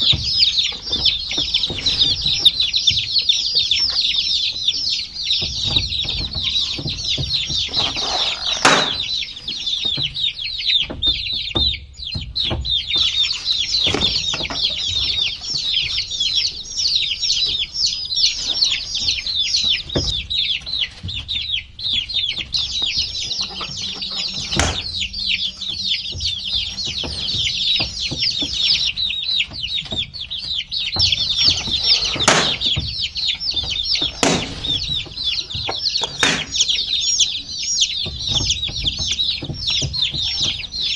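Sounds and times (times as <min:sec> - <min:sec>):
sharp knocks: 0:00.0 - 0:09.2, 0:22.4 - 0:30.1, 0:30.9 - 0:40.9
baby chicks peeping: 0:00.0 - 0:40.9.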